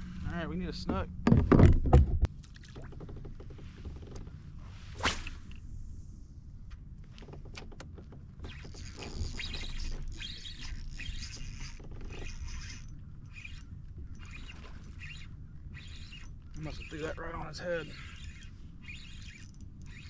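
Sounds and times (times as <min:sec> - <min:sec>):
fishing rod swishing in a cast: 0:04.6 - 0:05.9.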